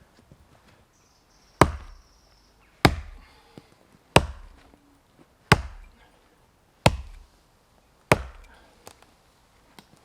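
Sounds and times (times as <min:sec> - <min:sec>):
axe chopping tree trunk: 0:01.6 - 0:02.0, 0:02.8 - 0:03.3, 0:04.1 - 0:04.7, 0:05.5 - 0:06.0, 0:06.8 - 0:07.3, 0:08.1 - 0:08.6.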